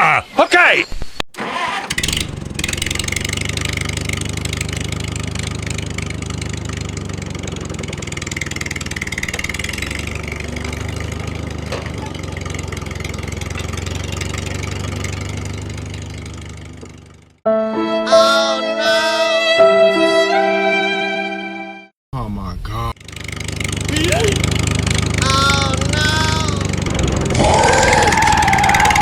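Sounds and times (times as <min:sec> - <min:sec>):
engine idling: 0:01.4 - 0:17.4, 0:23.0 - 0:29.0.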